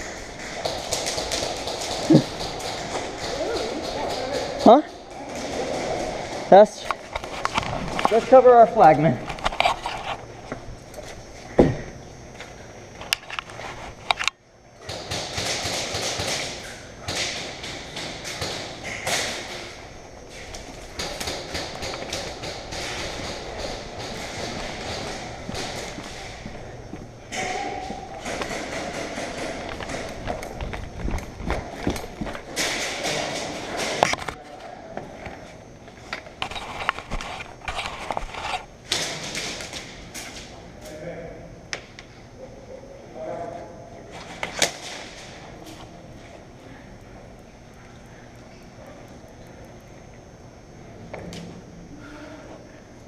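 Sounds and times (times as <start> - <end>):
rustling and shuffling: 0.0 - 14.2, 27.8 - 40.6.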